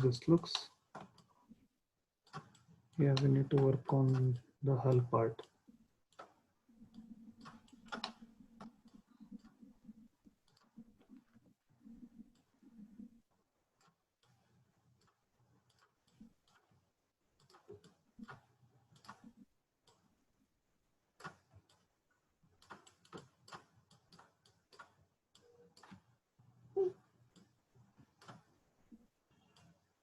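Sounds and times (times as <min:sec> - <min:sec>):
computer mouse clicks: 0:05.0 - 0:09.6, 0:10.4 - 0:11.2, 0:17.4 - 0:20.0, 0:22.6 - 0:26.1, 0:26.8 - 0:28.5.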